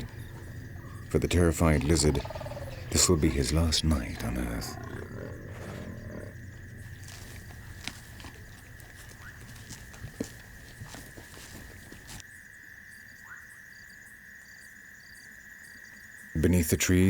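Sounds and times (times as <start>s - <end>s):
leopard growling: 0.0s - 12.2s
night insects trilling: 0.0s - 17.0s
knocks and rustles in tree: 6.9s - 12.2s.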